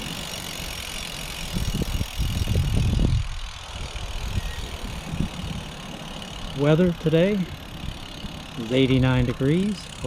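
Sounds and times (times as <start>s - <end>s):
bike riding hiss: 0.0s - 10.0s.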